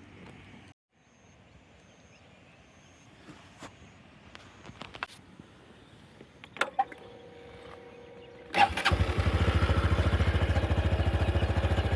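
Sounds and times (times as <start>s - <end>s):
faint steady tone: 5.4s - 8.6s
engine starting and idling: 8.5s - 11.9s.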